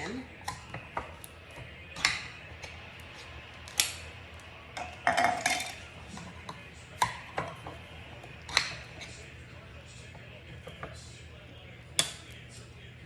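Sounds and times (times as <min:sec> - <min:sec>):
cans and utensil clinking: 0:00.0 - 0:02.8, 0:04.7 - 0:09.3.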